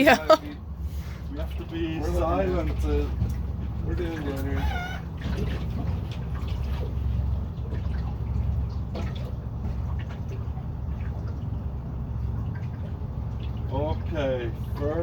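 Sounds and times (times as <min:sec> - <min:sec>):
boat motor humming: 0:00.0 - 0:15.0
water splashing and dripping: 0:02.5 - 0:15.0.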